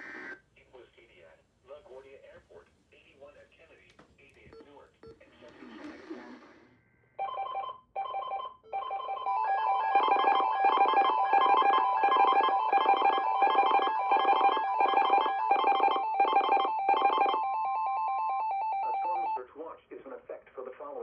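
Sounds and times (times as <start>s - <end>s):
two-tone emergency alert beeps: 8.0s - 19.4s.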